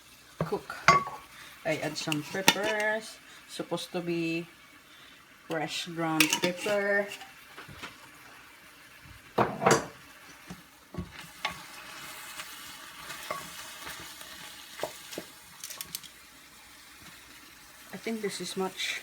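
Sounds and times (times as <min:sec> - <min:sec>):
food sizzling in oil: 0:00.0 - 0:19.0
utensil scraping pan: 0:01.8 - 0:03.1, 0:06.2 - 0:07.4, 0:11.2 - 0:14.2.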